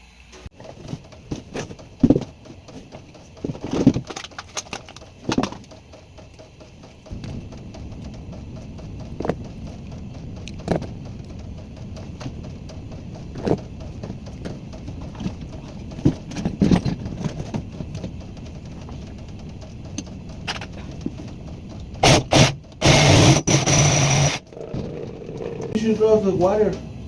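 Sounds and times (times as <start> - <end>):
tools and fittings clicking: 0.6 - 7.0.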